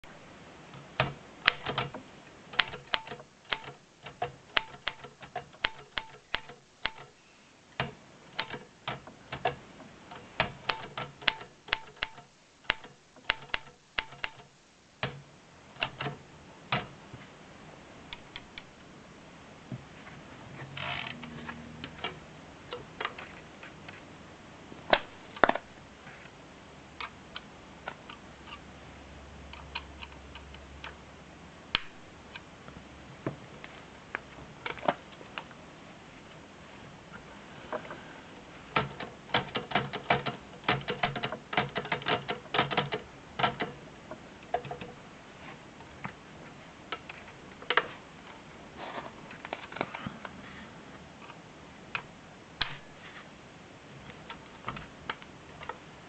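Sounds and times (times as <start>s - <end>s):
rasping typewriter mechanism: 1.0s - 7.1s, 7.8s - 15.2s, 38.7s - 43.8s
typewriter type-bar clacks: 1.0s - 7.1s, 7.8s - 15.2s, 38.8s - 43.8s.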